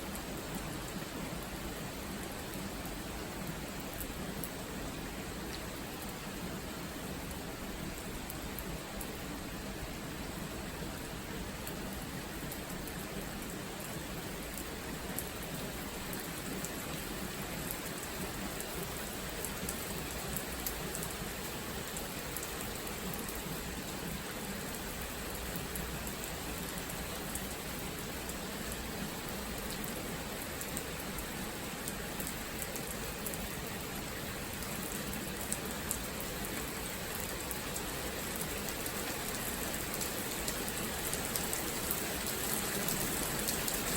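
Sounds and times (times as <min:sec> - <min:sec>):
steady rain: 0:00.0 - 0:43.9
raindrop ticks: 0:34.6 - 0:43.9.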